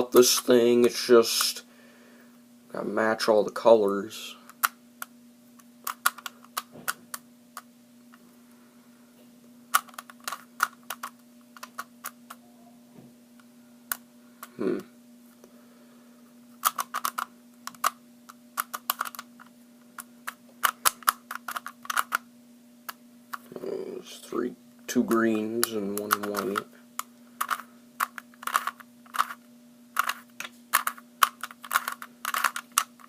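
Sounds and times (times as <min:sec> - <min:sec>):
faint steady hum: 0:00.0 - 0:33.0
puzzle cube plastic clicks: 0:04.5 - 0:07.7, 0:09.7 - 0:12.4, 0:16.6 - 0:22.3, 0:25.1 - 0:29.4, 0:30.0 - 0:33.0.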